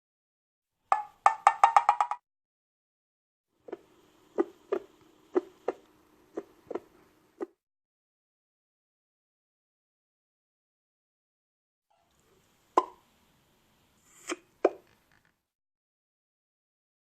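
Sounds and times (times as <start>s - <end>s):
wood block knocks: 0.9s - 2.2s.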